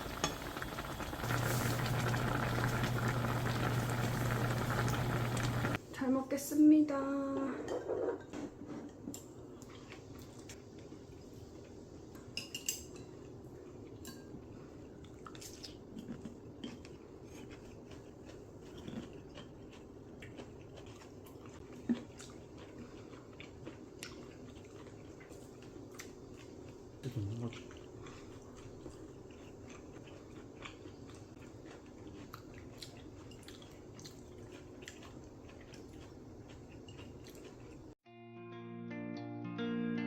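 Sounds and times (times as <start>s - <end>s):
faint steady hum: 0.0s - 7.4s
dishes and cutlery clinking: 12.2s - 13.2s.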